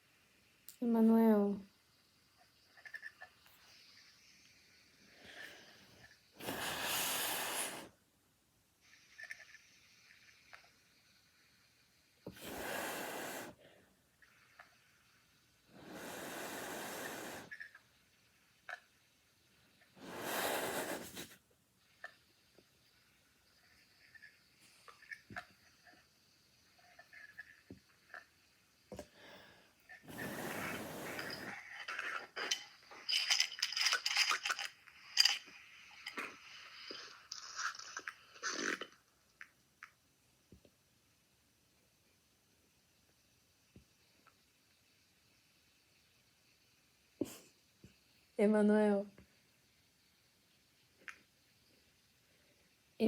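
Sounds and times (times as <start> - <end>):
irregular noisy breathing: 2.8 - 8.0, 12.2 - 17.9, 19.7 - 22.2, 28.9 - 33.5.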